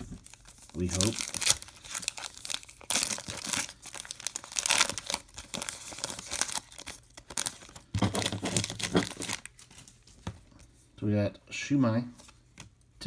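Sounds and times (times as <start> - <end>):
foil wrapper tearing and crinkling: 0.0 - 9.9
rustling of cards: 0.0 - 10.8.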